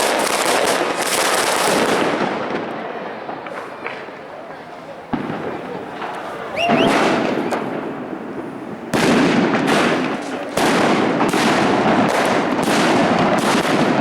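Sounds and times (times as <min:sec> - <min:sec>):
fireworks crackling: 0:00.0 - 0:14.0
short rising whistle: 0:06.5 - 0:07.2.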